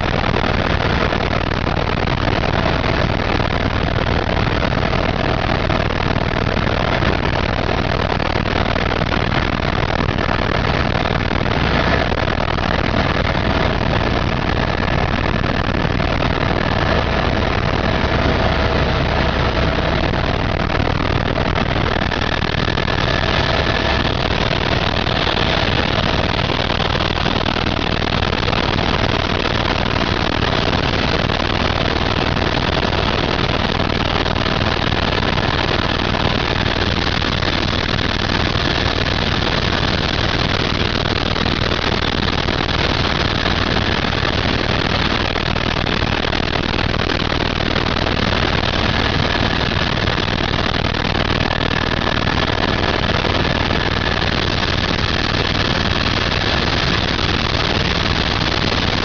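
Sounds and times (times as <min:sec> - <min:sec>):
faint steady whine: 0:00.0 - 0:59.0
helicopter engine and rotor: 0:00.0 - 0:59.0.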